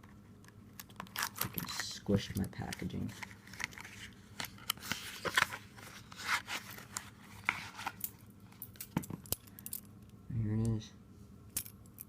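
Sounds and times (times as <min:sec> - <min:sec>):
packaging crinkling and rustling: 0:00.8 - 0:08.1.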